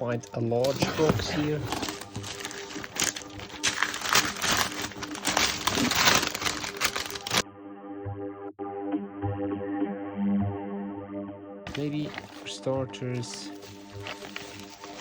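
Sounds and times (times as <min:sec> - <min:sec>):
background music: 0:00.0 - 0:15.0
packaging crackling: 0:00.1 - 0:07.4, 0:11.7 - 0:15.0.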